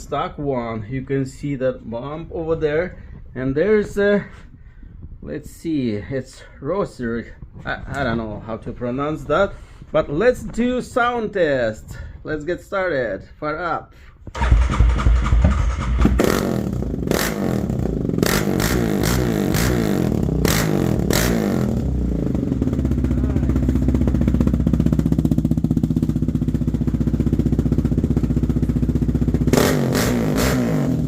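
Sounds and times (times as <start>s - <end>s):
engine starting and idling: 14.3s - 16.8s.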